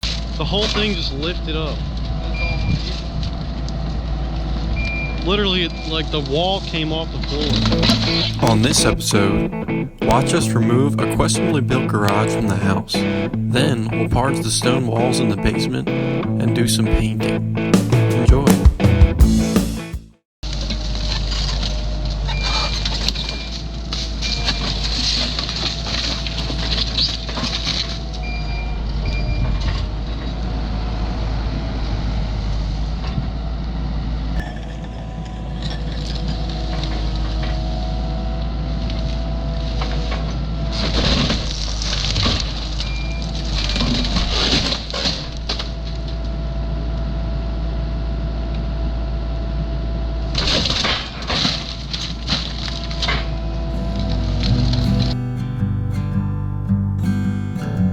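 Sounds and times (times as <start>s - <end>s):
skid loader engine running: 1.1s - 14.3s, 45.2s - 57.9s.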